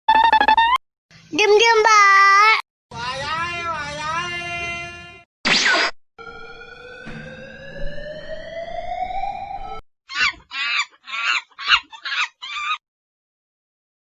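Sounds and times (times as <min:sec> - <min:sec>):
smoothly rising tone: 0:06.2 - 0:09.8.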